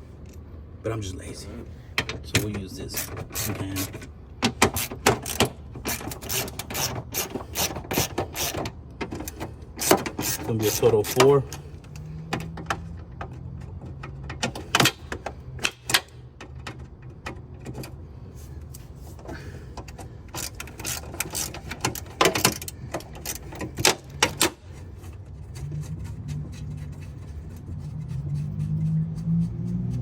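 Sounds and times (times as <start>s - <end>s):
ratchet clicking: 3.0s - 4.0s, 4.6s - 8.6s, 9.3s - 11.3s, 20.3s - 24.6s.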